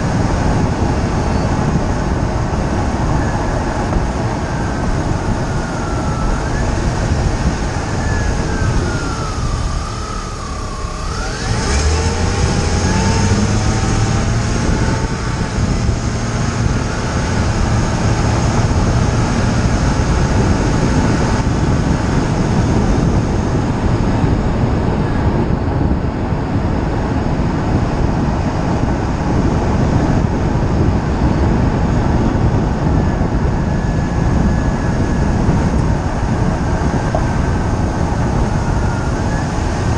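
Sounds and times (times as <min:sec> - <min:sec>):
low hum: 0:00.0 - 0:39.9
tyre and road rumble: 0:00.0 - 0:39.9
wind noise: 0:00.0 - 0:39.9
wavering gliding tone: 0:01.0 - 0:24.0, 0:33.6 - 0:39.9.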